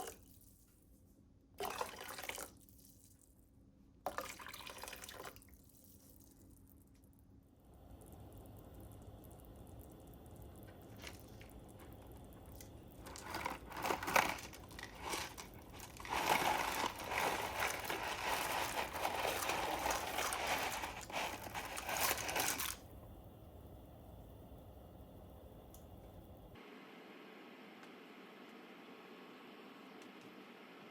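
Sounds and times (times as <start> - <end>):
packaging crinkling: 12.5 - 22.8.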